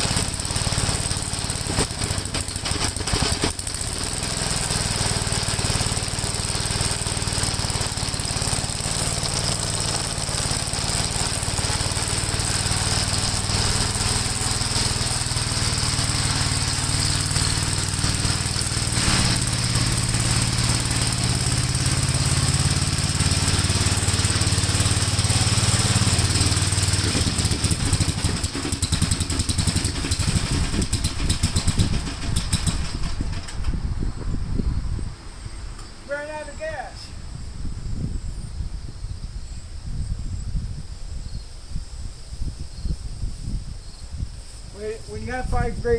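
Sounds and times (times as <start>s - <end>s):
tractor engine running: 0.0s - 34.5s.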